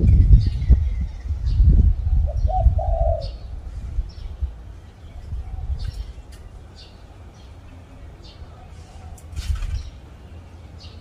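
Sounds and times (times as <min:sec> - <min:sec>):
small birds chirping: 0:00.0 - 0:11.0
dove cooing: 0:02.1 - 0:03.5.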